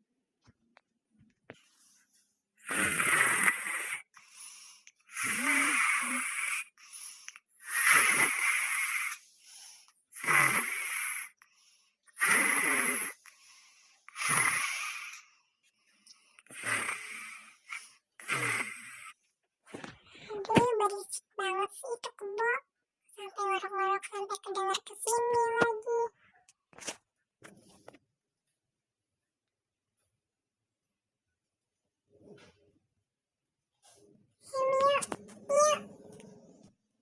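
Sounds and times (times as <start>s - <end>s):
rasping snoring: 2.6s - 4.2s, 5.1s - 6.8s, 7.6s - 9.3s, 10.1s - 11.4s, 12.1s - 13.4s, 14.1s - 15.3s, 16.4s - 19.2s, 34.8s - 36.9s.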